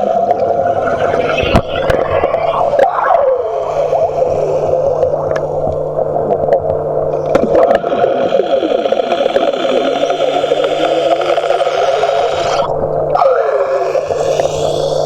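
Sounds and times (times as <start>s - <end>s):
wavering tones sliding downward: 0.0s - 5.8s
low hum: 0.0s - 8.8s
water gurgling and sloshing: 0.0s - 13.2s.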